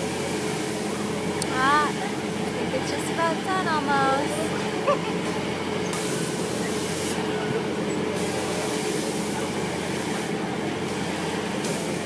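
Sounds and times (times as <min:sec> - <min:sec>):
ride machinery humming: 0:00.0 - 0:12.0.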